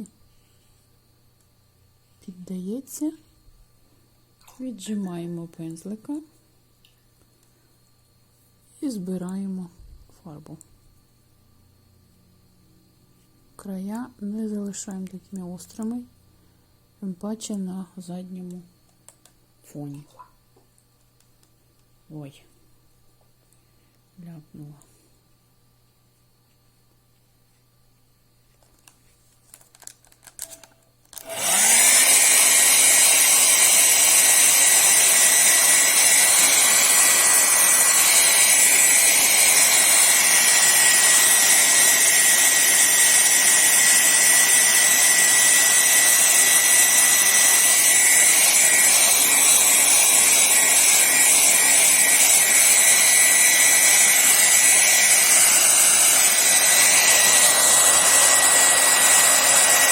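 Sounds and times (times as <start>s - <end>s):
hair dryer whining: 31.2s - 59.9s.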